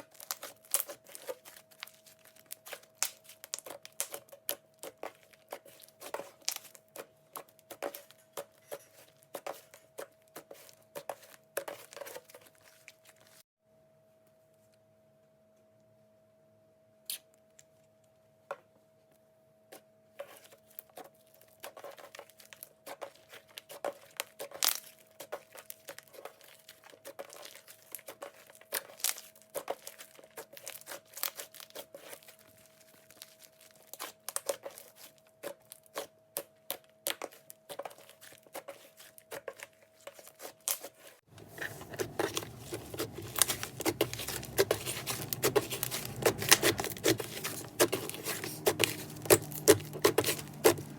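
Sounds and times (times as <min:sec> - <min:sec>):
slime kneaded sticky crackles: 0:00.0 - 0:08.1, 0:36.7 - 0:50.9.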